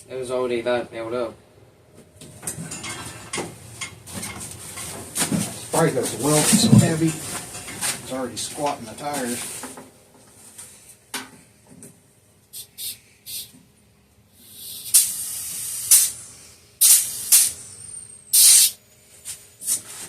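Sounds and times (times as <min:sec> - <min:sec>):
compressed air hissing from tire valve: 0:12.5 - 0:13.6, 0:14.4 - 0:19.8.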